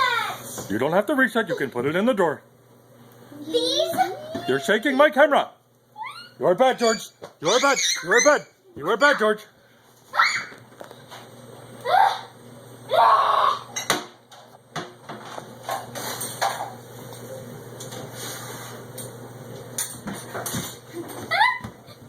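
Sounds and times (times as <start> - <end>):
dishes and cutlery clinking: 19.8 - 21.3.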